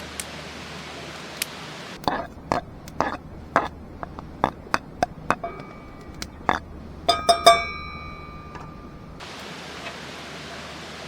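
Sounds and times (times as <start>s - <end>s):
metal cookware knocking: 2.0s - 9.2s
ringing metal clinks: 2.0s - 9.2s.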